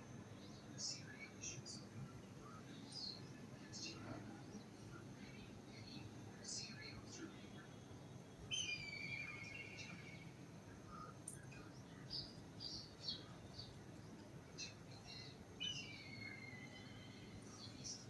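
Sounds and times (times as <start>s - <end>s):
bird chirps: 8.4s - 18.0s
bird trilled calls: 8.5s - 10.2s, 15.0s - 17.1s.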